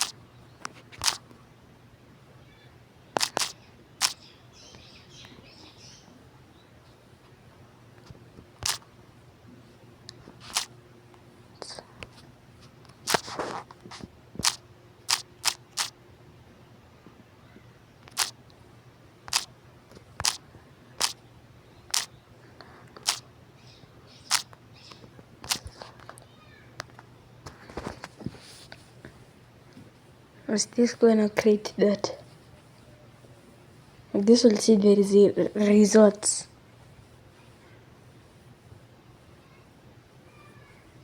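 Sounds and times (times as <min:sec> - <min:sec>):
short sharp clicks: 0:00.0 - 0:01.2, 0:03.2 - 0:04.2, 0:08.6 - 0:08.8, 0:10.5 - 0:10.7, 0:14.4 - 0:15.9, 0:18.0 - 0:18.4, 0:19.3 - 0:19.5, 0:20.2 - 0:20.4, 0:21.0 - 0:21.2, 0:21.9 - 0:22.1, 0:23.0 - 0:23.2, 0:24.3 - 0:24.6
faint low hum: 0:00.0 - 0:41.0.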